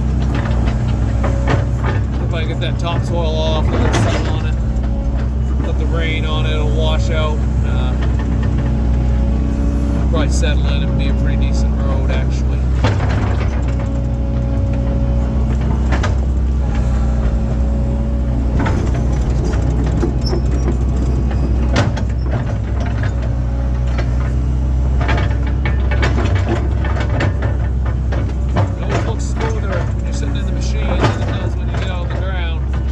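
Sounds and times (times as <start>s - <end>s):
excavator diesel engine running: 0.0s - 32.9s
knocks and clunks of digging: 0.0s - 32.9s.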